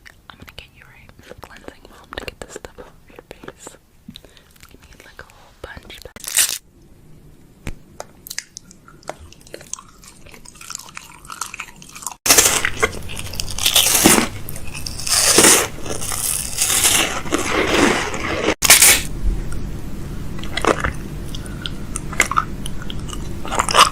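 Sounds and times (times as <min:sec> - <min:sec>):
plastic packaging crunching and rustling: 0:06.2 - 0:06.6, 0:09.4 - 0:19.1.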